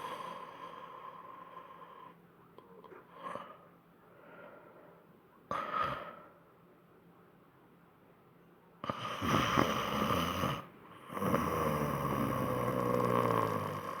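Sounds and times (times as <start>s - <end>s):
snoring: 8.8s - 14.0s.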